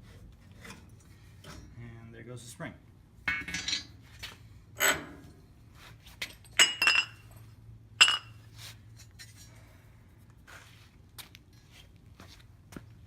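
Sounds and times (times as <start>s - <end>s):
steel parts clinking: 6.3s - 8.4s.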